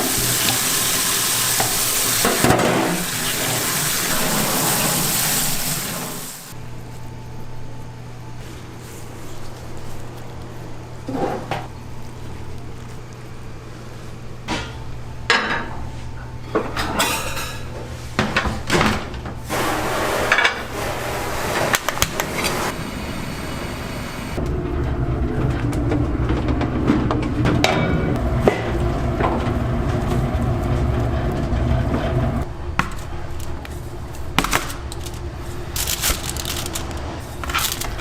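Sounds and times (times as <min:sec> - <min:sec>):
steady low hum: 0:21.9 - 0:38.0.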